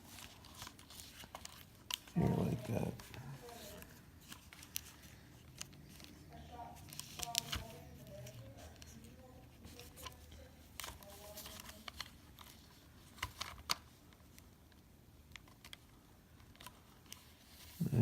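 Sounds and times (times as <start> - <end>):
plastic headset parts clicking: 0.2 - 2.1, 9.8 - 17.4.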